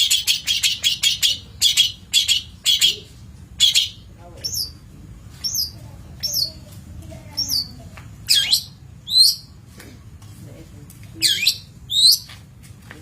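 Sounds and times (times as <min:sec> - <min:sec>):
bird high sharp chirps: 0:00.0 - 0:04.8, 0:05.4 - 0:06.6, 0:07.3 - 0:09.6, 0:11.2 - 0:12.3.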